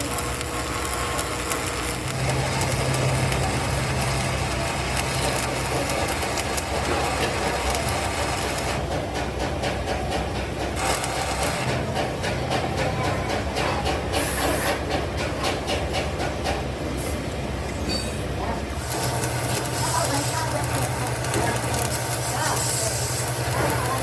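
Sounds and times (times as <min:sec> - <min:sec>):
machine motor humming: 0:00.0 - 0:08.8, 0:10.8 - 0:11.8, 0:18.7 - 0:24.0
rapid regular ticking: 0:00.0 - 0:08.8, 0:10.8 - 0:11.8, 0:18.8 - 0:24.0
noisy clatter: 0:00.0 - 0:24.0.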